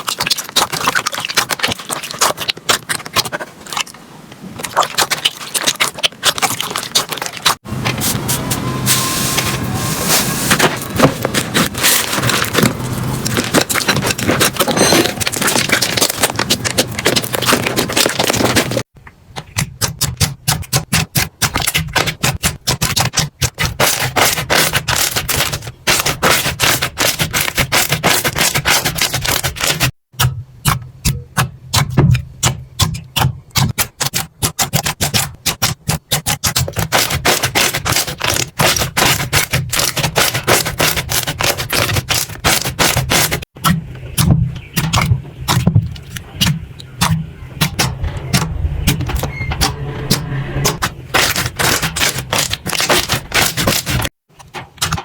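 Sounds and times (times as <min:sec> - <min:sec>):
slime crackling and popping: 0:00.0 - 0:04.0, 0:11.3 - 0:18.9.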